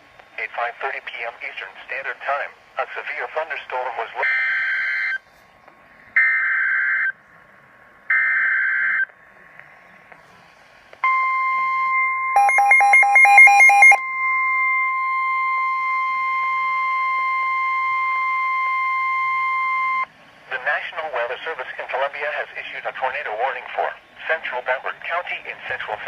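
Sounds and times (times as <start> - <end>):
steady warning alert tone: 11.1 - 14.0
rapid beeping: 12.3 - 14.0.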